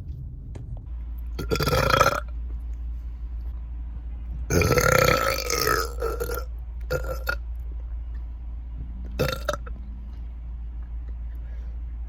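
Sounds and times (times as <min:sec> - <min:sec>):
woman burping loudly: 0:01.4 - 0:02.2.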